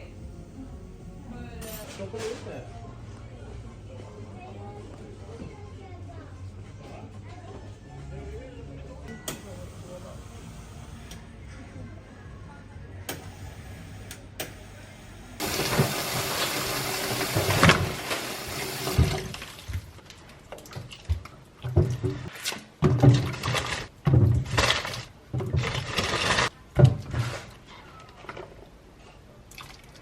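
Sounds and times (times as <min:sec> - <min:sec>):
tap water running into sink: 0:15.4 - 0:19.8.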